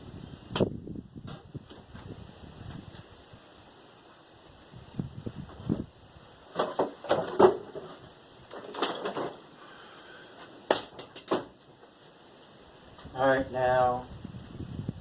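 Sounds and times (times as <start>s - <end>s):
metal parts and tools clinking: 6.6s - 9.5s.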